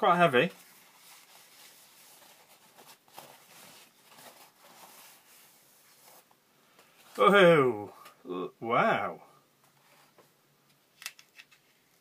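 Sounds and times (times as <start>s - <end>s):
paper rustling and crinkling: 0.4s - 6.3s.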